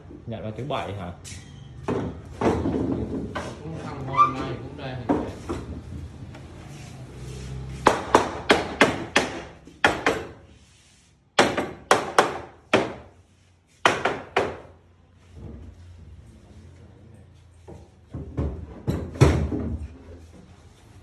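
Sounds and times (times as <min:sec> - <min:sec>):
hammer striking wood: 0:07.8 - 0:10.5, 0:11.4 - 0:13.2, 0:13.8 - 0:14.8.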